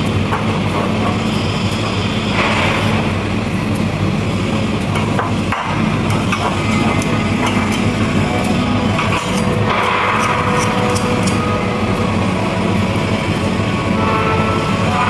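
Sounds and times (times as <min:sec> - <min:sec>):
welding arc crackling: 0:00.0 - 0:15.0
welding machine hum: 0:00.0 - 0:15.0.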